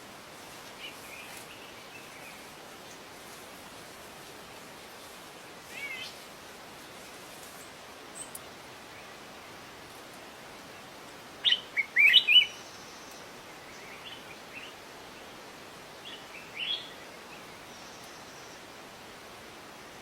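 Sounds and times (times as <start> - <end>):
steady background hiss: 0.0 - 20.0
bird chirping: 11.4 - 14.7.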